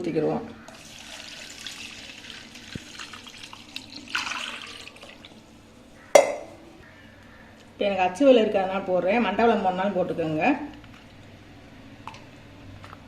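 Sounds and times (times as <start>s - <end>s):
water pouring into pot: 0.7s - 5.4s
sharp knock: 6.2s - 6.6s.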